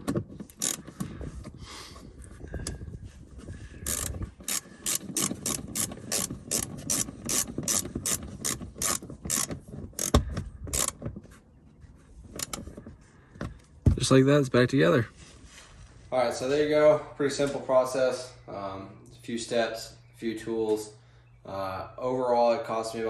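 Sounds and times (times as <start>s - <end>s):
ratchet wrench clicking: 0.5s - 0.8s, 3.8s - 11.0s, 12.4s - 12.6s.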